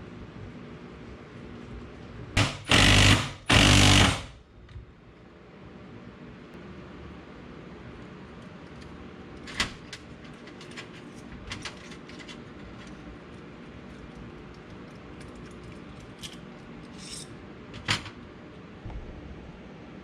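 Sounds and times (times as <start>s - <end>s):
steady low hum: 0.0s - 20.0s
tools clicking and knocking: 9.4s - 13.0s.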